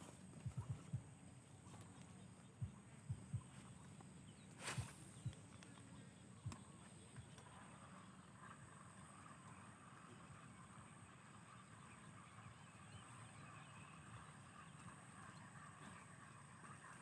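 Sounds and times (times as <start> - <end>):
soft low thumps: 0.0 - 5.6.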